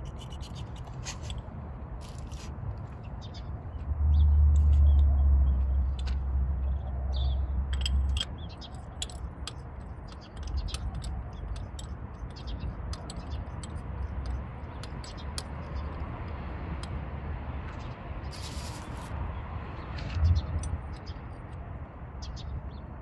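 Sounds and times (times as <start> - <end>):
hand tools clicking and scraping: 0.0 - 2.6, 7.7 - 17.0.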